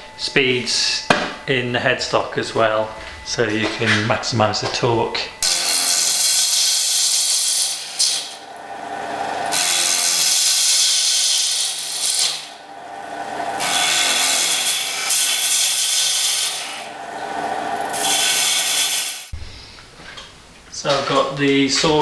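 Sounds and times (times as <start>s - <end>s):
lathe motor hum: 1.4s - 19.4s
loud wood scraping on lathe: 5.0s - 19.4s.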